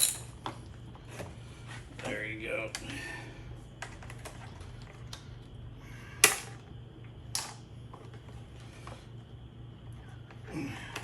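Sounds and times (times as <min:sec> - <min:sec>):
hand tools clicking on metal: 0:00.0 - 0:00.2
steady low hum: 0:00.0 - 0:11.0.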